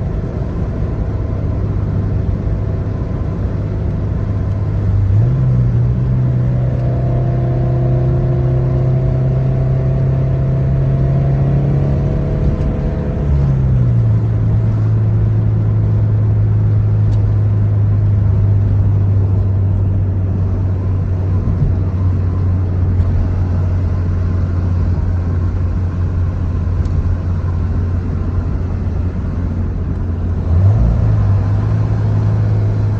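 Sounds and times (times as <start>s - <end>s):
car engine drone from inside cabin: 0.0s - 32.9s.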